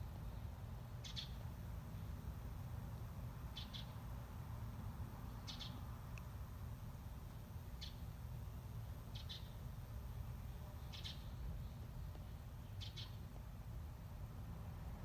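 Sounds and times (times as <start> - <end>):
sparrow chirping: 1.0 - 1.4, 3.6 - 4.0, 5.4 - 5.8, 9.1 - 9.6, 10.9 - 11.3, 12.8 - 13.2.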